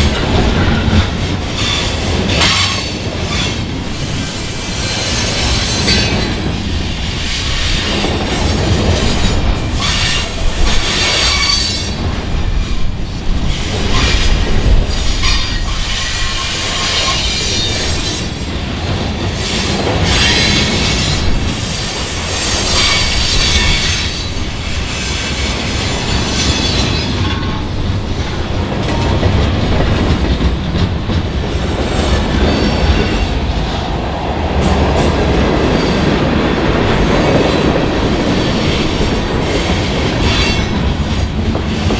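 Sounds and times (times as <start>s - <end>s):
wheels squealing against rails: 0.0s - 18.5s, 19.3s - 29.1s, 37.0s - 41.1s
freight train rolling past: 0.0s - 41.9s
train wheels clacking: 0.0s - 41.9s.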